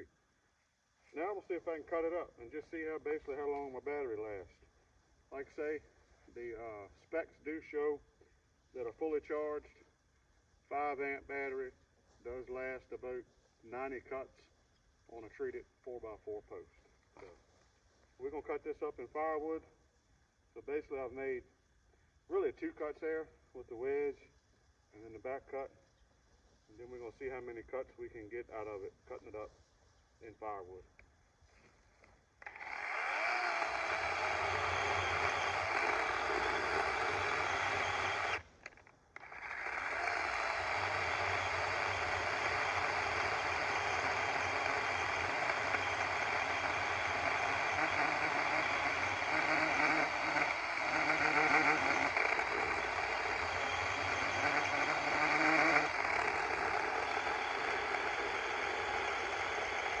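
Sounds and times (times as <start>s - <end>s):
chainsaw cutting through log: 32.4s - 38.5s, 39.2s - 60.0s.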